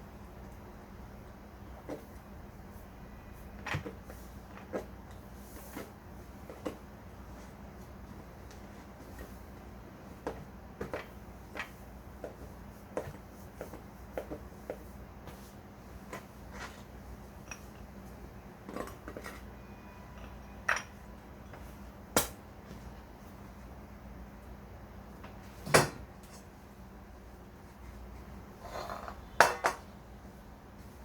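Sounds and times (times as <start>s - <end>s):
low steady hum: 0.0s - 31.0s
dishes and utensils clinking: 20.1s - 21.0s, 29.4s - 29.8s.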